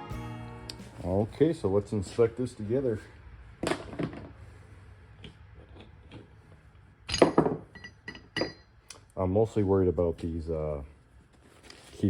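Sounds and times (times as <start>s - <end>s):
metal parts clinking and knocking: 7.1s - 8.7s.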